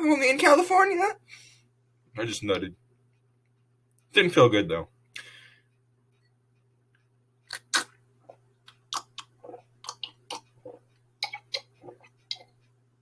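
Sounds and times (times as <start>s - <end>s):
wet mouth clicks and smacks: 7.5s - 8.0s, 8.6s - 12.6s.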